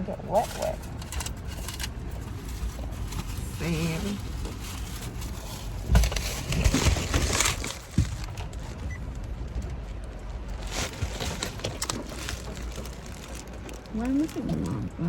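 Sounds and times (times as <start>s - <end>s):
heavy rain on a car: 6.6s - 15.0s.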